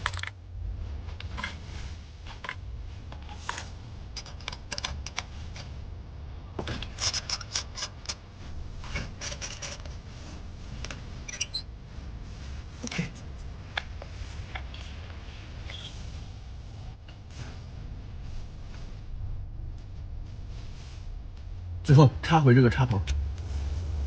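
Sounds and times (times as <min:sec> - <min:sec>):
steady low rumble: 0:00.0 - 0:24.0
hands clicking and scraping on engine: 0:02.3 - 0:05.7, 0:06.6 - 0:08.2.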